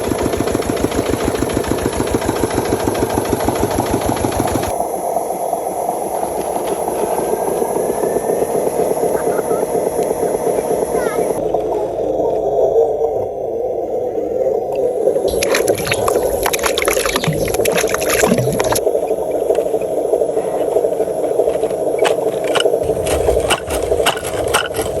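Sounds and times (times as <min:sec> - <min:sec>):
toy truck motor drone: 0:00.0 - 0:12.0, 0:17.5 - 0:25.0
churning water: 0:00.0 - 0:12.2, 0:14.8 - 0:25.0
scraping and clicking: 0:21.4 - 0:25.0.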